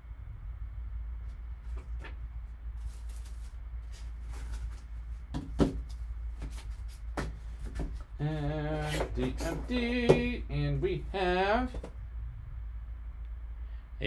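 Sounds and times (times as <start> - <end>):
low steady hum: 0.0 - 14.0
cards and packaging rustling: 2.8 - 8.0.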